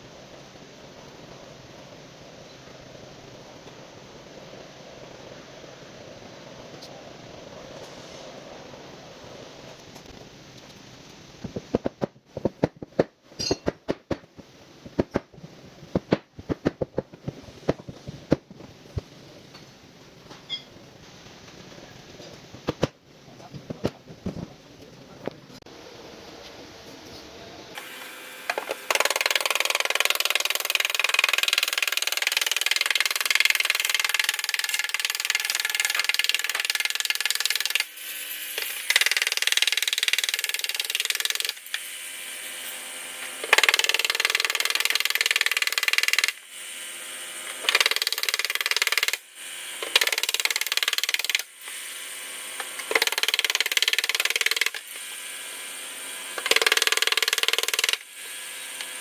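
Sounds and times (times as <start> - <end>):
power tool running: 27.7 - 59.0.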